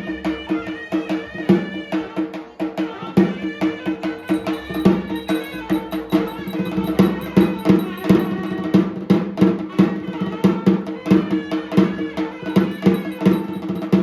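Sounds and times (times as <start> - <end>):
fast steady drum beat: 4.1 - 8.7, 12.4 - 14.0.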